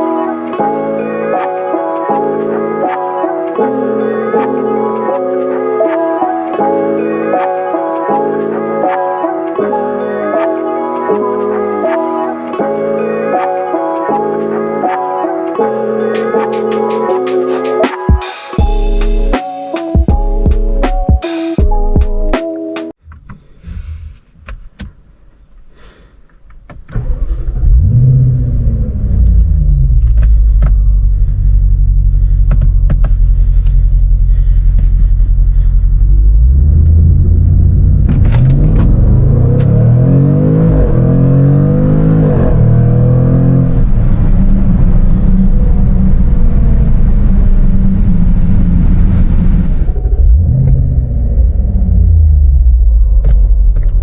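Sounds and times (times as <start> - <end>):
car engine starting and revving: 26.9 - 54.0.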